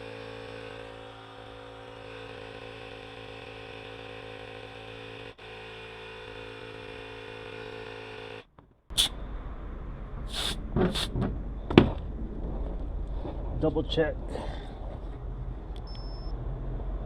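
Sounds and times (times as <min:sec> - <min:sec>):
air compressor running: 0:09.0 - 0:09.2, 0:10.3 - 0:11.1
short sharp air hisses: 0:09.0 - 0:09.2, 0:10.3 - 0:11.1.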